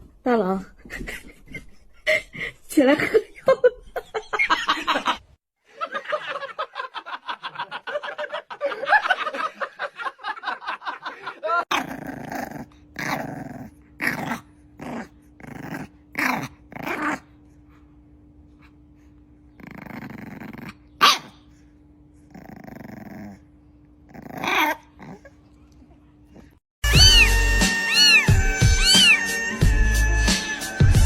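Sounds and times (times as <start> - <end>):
dog growling and yipping: 11.7 - 17.5, 19.5 - 21.5, 22.2 - 25.4, 26.4 - 30.2.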